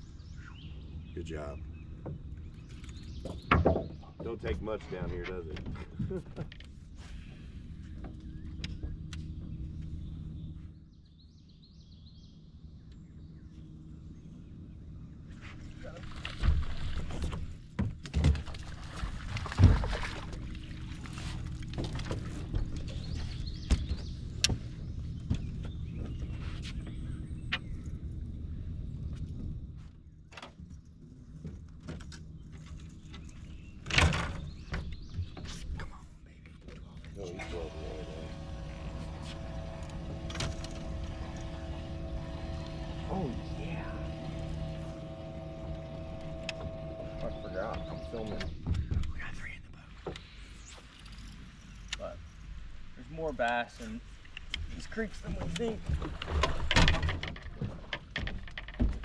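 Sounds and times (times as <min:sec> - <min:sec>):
songbird chirping: 0:00.0 - 0:05.8, 0:07.0 - 0:16.3, 0:20.3 - 0:30.4, 0:32.1 - 0:56.3
low hum and rumble: 0:00.0 - 0:59.0
knocks and rattles: 0:02.0 - 0:06.7, 0:54.6 - 0:59.0.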